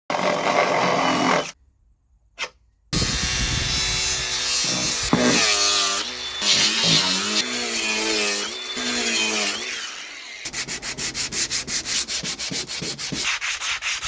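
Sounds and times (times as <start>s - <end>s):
power tool cutting wood: 0.1s - 1.6s, 3.0s - 11.3s.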